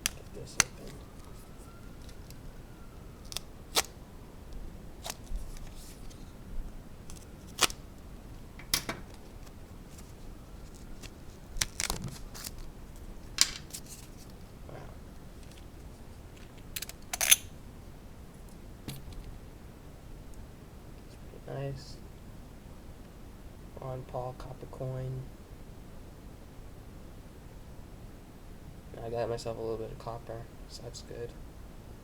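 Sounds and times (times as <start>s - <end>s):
packaging clicks and snaps: 0.0s - 2.5s, 3.2s - 4.0s, 5.0s - 6.2s, 7.1s - 7.8s, 10.6s - 12.7s
soft handling noise: 0.0s - 2.6s, 5.0s - 14.6s, 15.2s - 17.4s.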